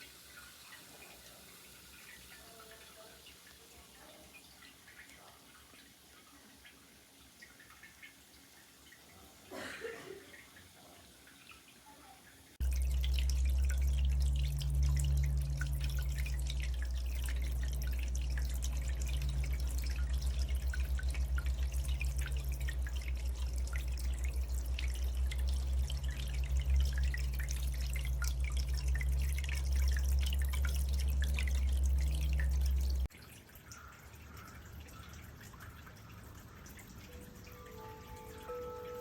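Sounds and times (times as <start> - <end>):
fountain water dripping and trickling: 0.0 - 39.0
steady low hum: 12.6 - 33.1.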